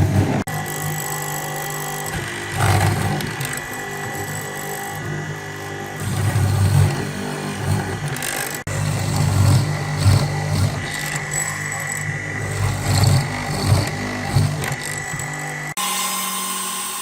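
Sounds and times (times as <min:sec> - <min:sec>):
power tool motor running: 0:00.0 - 0:17.0.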